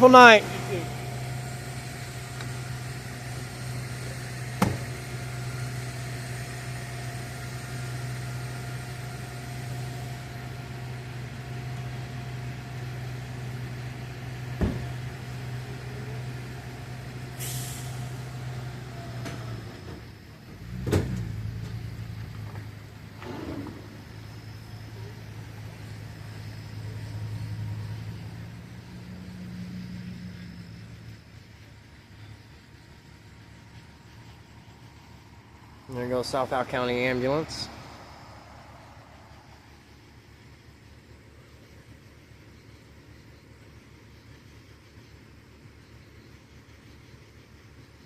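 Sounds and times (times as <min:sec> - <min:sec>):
diesel engine idling: 0:00.0 - 0:48.0
short hiss: 0:17.4 - 0:18.2.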